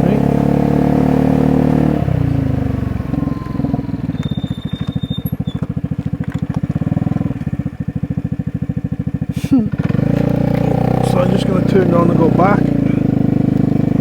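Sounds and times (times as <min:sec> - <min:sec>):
scooter engine idling: 0:02.0 - 0:14.0.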